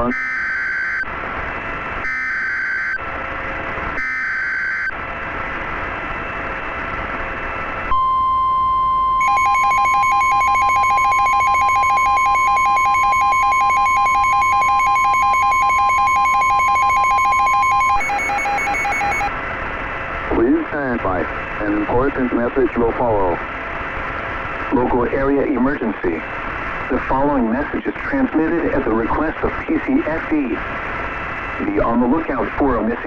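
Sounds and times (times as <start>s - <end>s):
long steady alert tone: 7.9s - 19.3s
radio static: 9.2s - 19.3s, 24.7s - 26.2s, 26.9s - 30.6s, 31.6s - 33.0s
rapidly pulsing tone: 9.2s - 19.3s
screeching data bursts: 9.2s - 19.3s.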